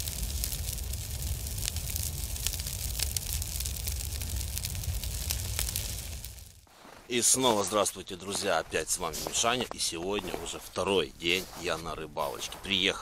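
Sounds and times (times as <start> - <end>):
crackling clicks of ice: 0.0 - 6.9.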